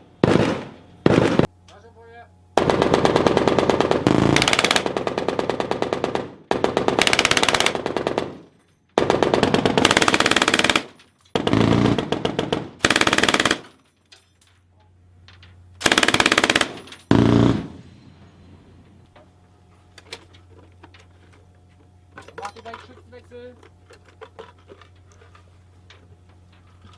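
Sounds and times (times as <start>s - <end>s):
automatic gunfire bursts: 0.2s - 1.5s, 2.6s - 8.4s, 9.0s - 13.7s, 15.8s - 17.8s.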